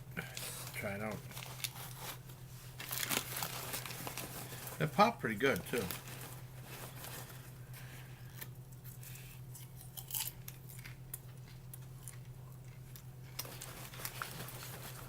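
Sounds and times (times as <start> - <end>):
steady low hum: 0.0 - 15.0
paper bag crinkling: 0.4 - 7.9, 13.2 - 15.0.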